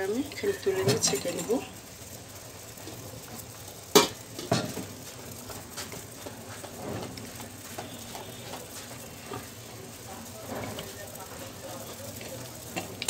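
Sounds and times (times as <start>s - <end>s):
hot pot hissing: 0.0s - 13.0s
metal cookware clinking: 0.3s - 1.7s, 3.9s - 4.8s.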